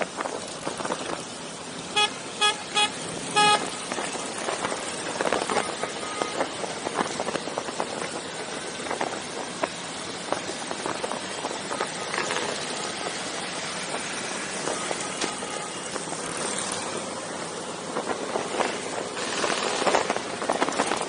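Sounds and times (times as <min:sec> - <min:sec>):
road and engine noise: 0:00.0 - 0:21.0
vehicle horn beeps: 0:01.9 - 0:03.8, 0:05.6 - 0:06.5, 0:14.8 - 0:15.9.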